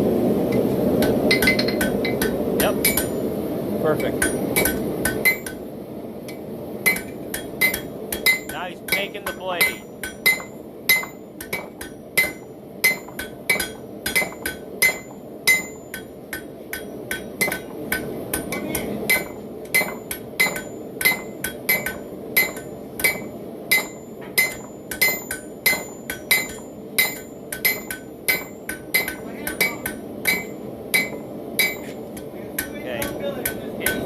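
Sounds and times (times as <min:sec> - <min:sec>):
steady low rush: 0:00.0 - 0:10.0
hammer ringing on anvil: 0:01.0 - 0:03.2, 0:06.9 - 0:32.0, 0:32.6 - 0:34.0.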